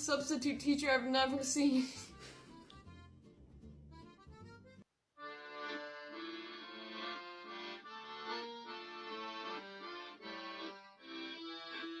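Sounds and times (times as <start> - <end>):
accordion playing a tune: 2.0 - 3.3, 3.9 - 12.0.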